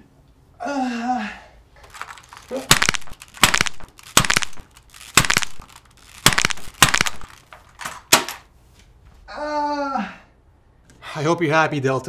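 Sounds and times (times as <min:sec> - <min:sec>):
sharp cracking and breaking blows: 0:01.8 - 0:08.5.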